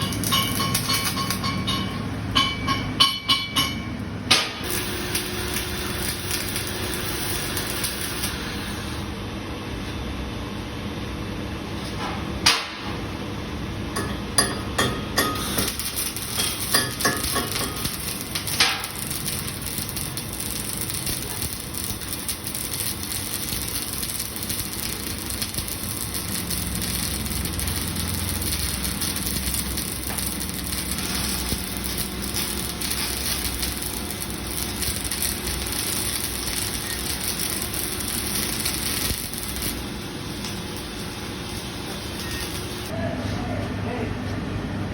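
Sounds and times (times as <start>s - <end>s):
sharp metallic knocks: 0.0s - 4.6s
welding torch crackling hiss: 4.6s - 9.2s, 15.2s - 43.0s.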